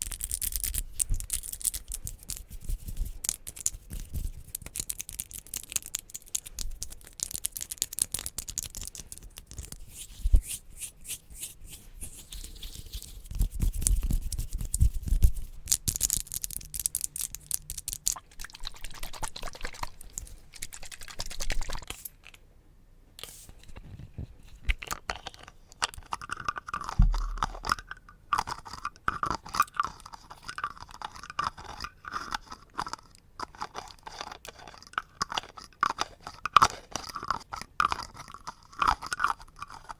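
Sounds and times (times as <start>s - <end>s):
crisp tapping on objects: 0.0s - 9.9s, 24.6s - 29.4s.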